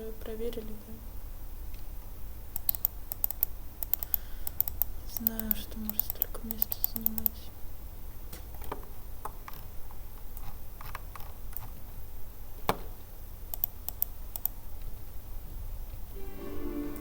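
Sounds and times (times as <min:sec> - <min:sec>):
keyboard keystrokes and clicks: 0:02.5 - 0:07.4, 0:10.3 - 0:11.8, 0:13.5 - 0:14.9.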